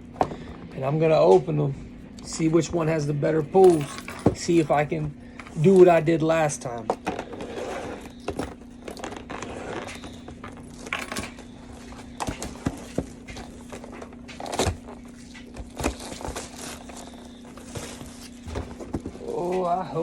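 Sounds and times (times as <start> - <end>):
steady low hum: 0.0 - 20.0
cardboard boxes being handled: 6.9 - 20.0.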